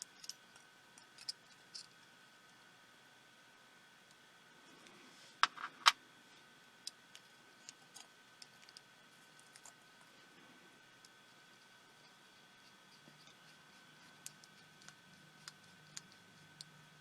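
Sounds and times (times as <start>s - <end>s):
small tools and parts clicking: 0.0s - 2.0s.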